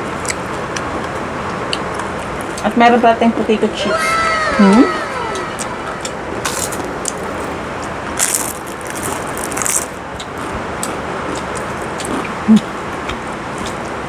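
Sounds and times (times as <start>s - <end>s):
chip bag crinkling: 6.4s - 7.6s, 8.2s - 10.5s.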